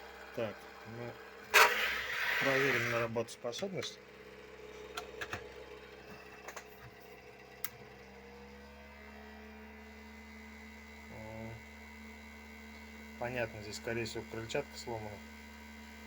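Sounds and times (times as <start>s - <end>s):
cooling fan humming: 0.0s - 16.0s.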